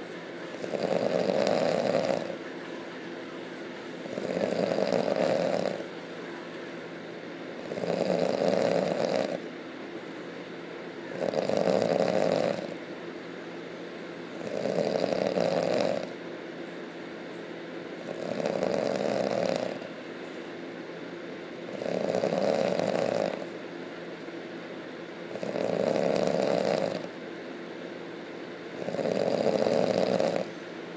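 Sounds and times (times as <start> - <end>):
person snoring loudly: 0.6 - 2.4, 4.0 - 5.8, 7.6 - 9.4, 11.1 - 12.8, 14.4 - 16.1, 18.1 - 19.8, 21.7 - 23.5, 25.3 - 27.1, 28.8 - 30.5.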